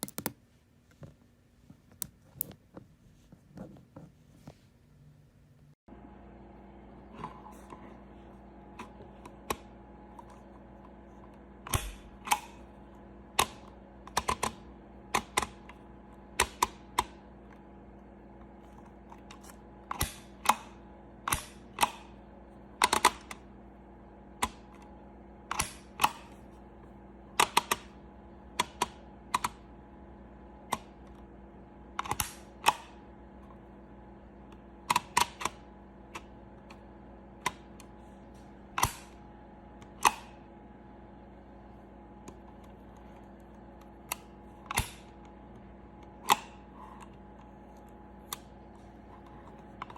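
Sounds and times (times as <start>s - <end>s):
label maker plastic clicks: 0.0s - 0.4s.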